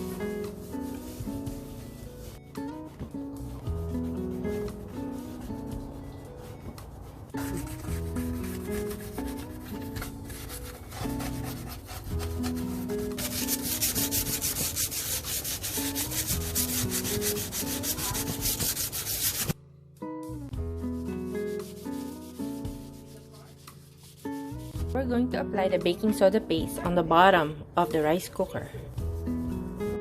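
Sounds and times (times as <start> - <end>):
soft background music: 0.0 - 30.0
scratchy scrubbing of a surface: 6.5 - 19.6.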